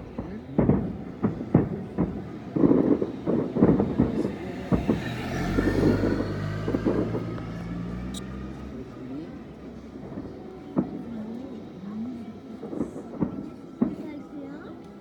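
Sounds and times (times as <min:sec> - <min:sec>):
sharp bangs and knocks: 0:00.1 - 0:07.6
low engine hum: 0:03.0 - 0:10.6.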